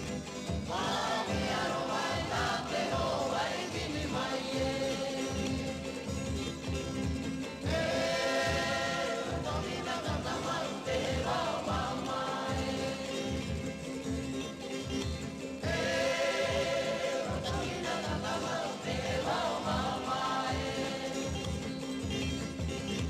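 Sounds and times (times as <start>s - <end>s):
instrumental accompaniment: 0.0s - 23.0s
choir singing sustained chords: 0.7s - 5.9s, 7.6s - 13.6s, 15.6s - 21.4s.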